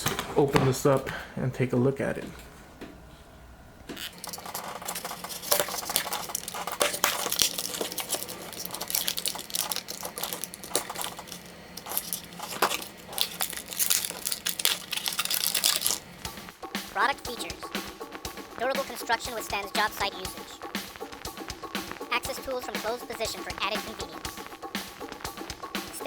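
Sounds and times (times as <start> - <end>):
packaging crinkling and tearing: 4.0 - 16.3.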